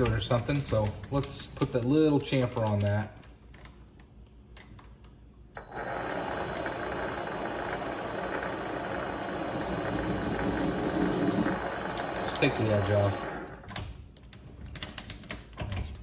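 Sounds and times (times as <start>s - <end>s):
lathe running with high whine: 5.6s - 13.6s.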